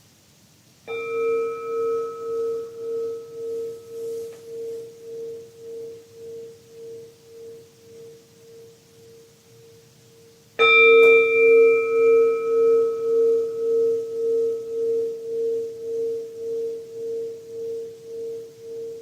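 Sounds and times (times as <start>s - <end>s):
singing bowl ringing: 0.9s - 19.0s.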